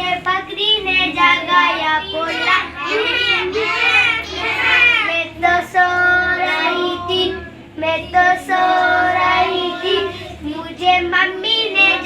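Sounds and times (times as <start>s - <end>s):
young children singing: 0.0s - 12.0s.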